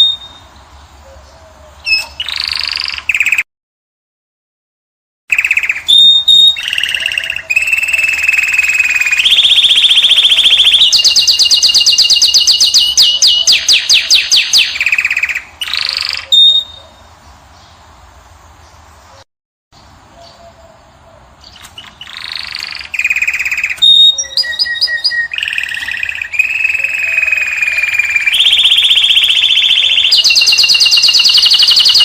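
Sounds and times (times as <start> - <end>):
finch singing trills: 0.0 - 3.4, 5.3 - 17.8, 20.1 - 32.0.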